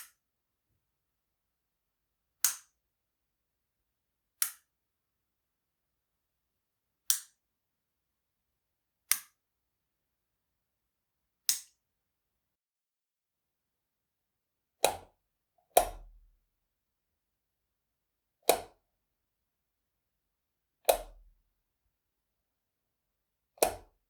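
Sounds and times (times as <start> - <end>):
light switch clicks: 18.5 - 18.7, 23.6 - 23.9.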